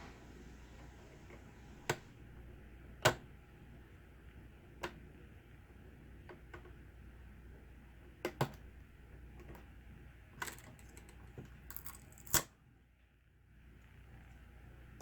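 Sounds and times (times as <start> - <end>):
small parts clicking and tapping: 10.4 - 12.5.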